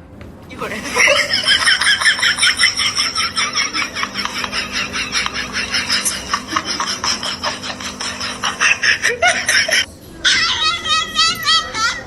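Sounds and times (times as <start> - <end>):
rapid rhythmic scratching: 0.5 - 9.9.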